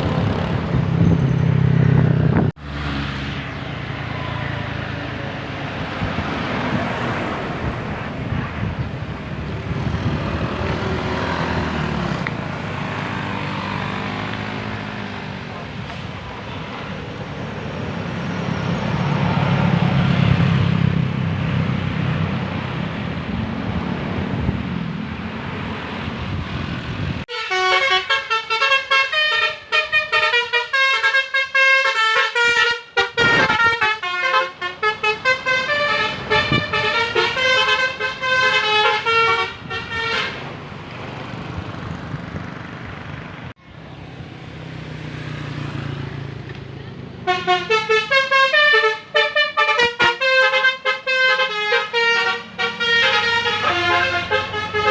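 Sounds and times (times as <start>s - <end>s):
bus engine rumbling: 0.0s - 54.9s
musical air horn playing tune: 27.3s - 40.4s, 47.3s - 54.9s.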